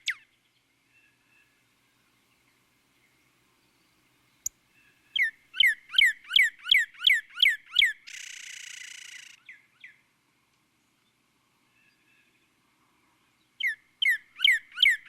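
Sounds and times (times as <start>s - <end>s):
bird calling: 4.8s - 10.0s, 13.6s - 15.0s.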